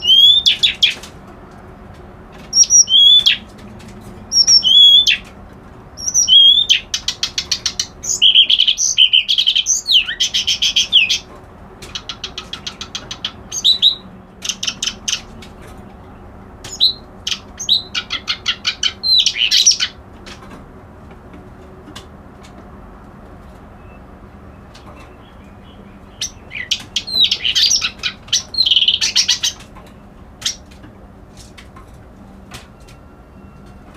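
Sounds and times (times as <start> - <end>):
songbird singing: 0.0 - 1.1, 2.4 - 20.5, 23.5 - 31.1.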